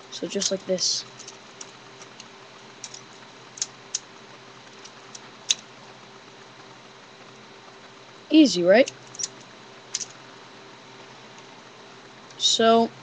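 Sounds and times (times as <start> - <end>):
plastic pieces clicking: 0.3 - 3.0.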